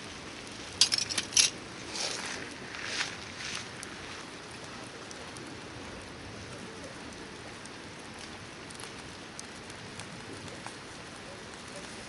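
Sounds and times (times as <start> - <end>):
campfire hissing and crackling: 0.0 - 12.0.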